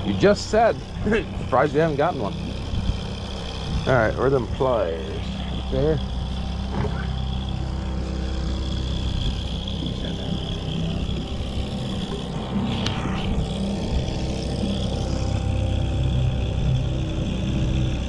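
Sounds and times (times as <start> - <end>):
outboard motor droning: 0.0 - 18.0.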